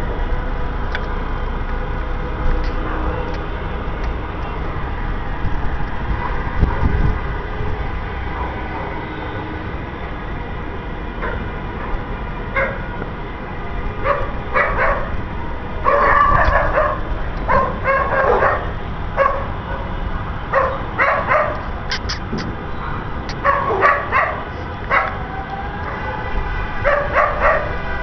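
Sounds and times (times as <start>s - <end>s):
steady low rumble: 0.0s - 8.9s
dog barking: 12.6s - 12.9s, 14.0s - 15.2s, 15.8s - 19.9s, 20.5s - 21.7s, 22.8s - 25.2s, 26.8s - 27.8s.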